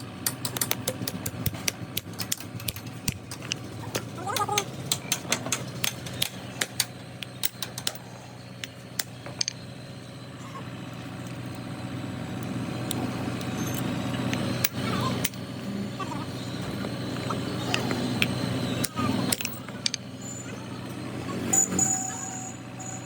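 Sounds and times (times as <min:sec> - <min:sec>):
engine hum: 0:00.0 - 0:23.0
metallic clicks and taps: 0:00.2 - 0:08.0.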